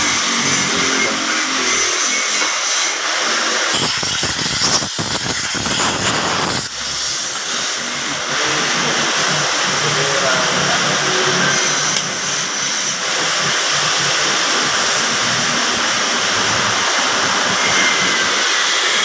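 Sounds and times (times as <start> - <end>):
loud hissing noise: 0.0 - 19.0.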